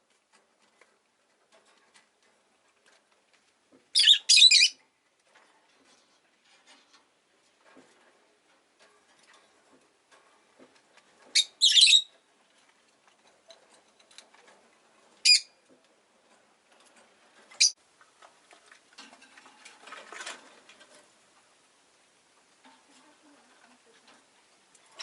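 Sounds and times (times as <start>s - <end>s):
faint clicks and rustling: 0.0s - 4.0s, 4.8s - 25.0s
bird sharp high chirps: 4.0s - 4.8s, 11.4s - 12.1s.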